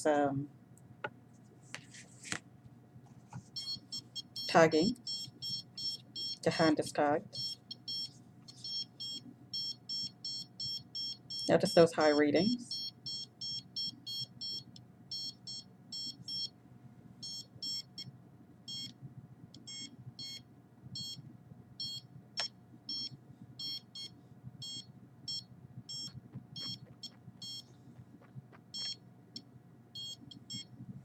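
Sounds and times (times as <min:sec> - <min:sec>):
detector meter beeping: 0:03.6 - 0:06.4, 0:07.3 - 0:16.5, 0:17.2 - 0:18.1, 0:18.7 - 0:19.0, 0:19.6 - 0:21.2, 0:21.8 - 0:27.7, 0:28.7 - 0:30.7.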